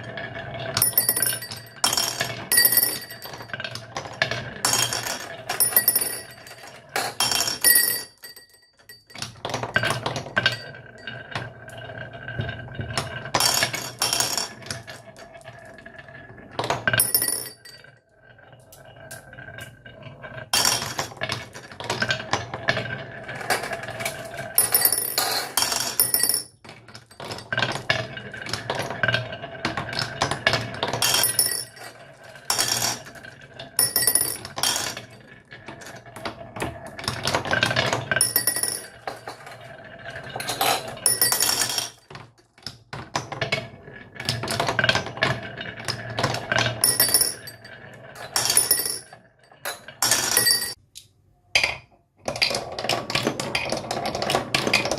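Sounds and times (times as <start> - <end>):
toy pieces clattering on track: 0.7 - 11.8, 13.0 - 15.7.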